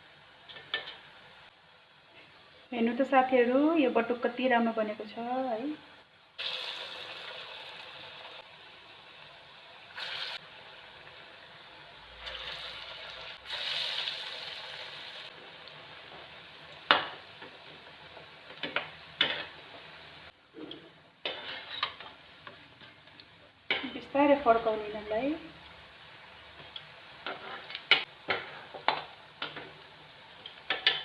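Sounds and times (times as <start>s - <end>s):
fritters sizzling in oil: 6.3s - 11.2s, 11.9s - 31.0s.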